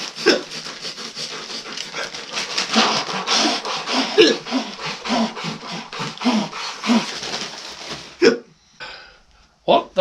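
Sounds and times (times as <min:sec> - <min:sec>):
man panting heavily: 0:00.0 - 0:07.6
voiced gasps: 0:00.0 - 0:07.6, 0:08.5 - 0:09.5.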